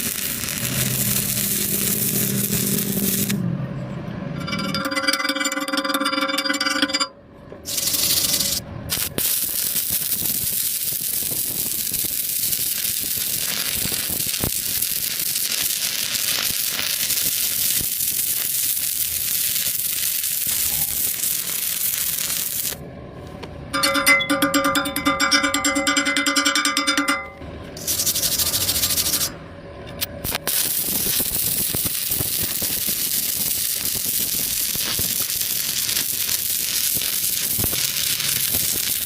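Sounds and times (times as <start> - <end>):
welding arc crackling and hissing: 0.0 - 3.4, 7.7 - 22.8, 27.8 - 29.3, 30.0 - 39.0.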